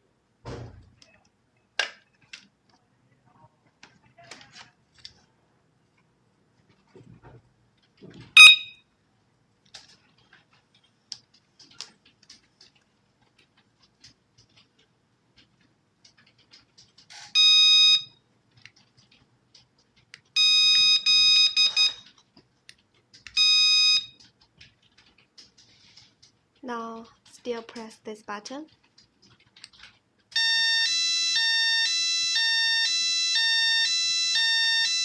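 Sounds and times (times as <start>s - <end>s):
high-pitched alarm buzzer beeps: 8.4s - 8.8s, 20.4s - 22.0s, 30.4s - 35.0s.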